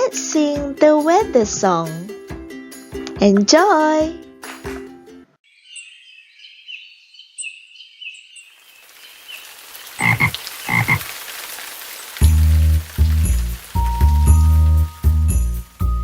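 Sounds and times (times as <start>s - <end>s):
frogs croaking: 5.5s - 13.0s
rain hissing: 8.5s - 16.0s
music with strong bass line: 12.2s - 16.0s.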